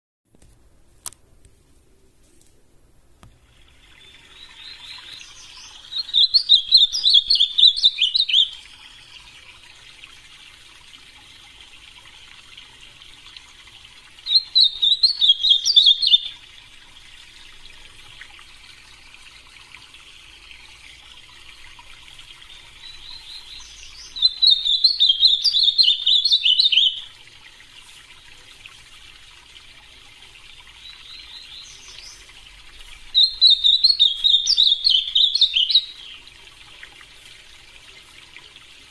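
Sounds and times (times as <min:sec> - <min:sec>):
soft bird twittering: 0:03.8 - 0:09.4, 0:14.3 - 0:16.4, 0:22.5 - 0:27.1, 0:30.8 - 0:32.4, 0:33.1 - 0:36.3
bird singing warbled phrases: 0:03.9 - 0:09.4, 0:14.2 - 0:16.4, 0:22.4 - 0:27.2, 0:30.7 - 0:32.4, 0:33.1 - 0:36.4.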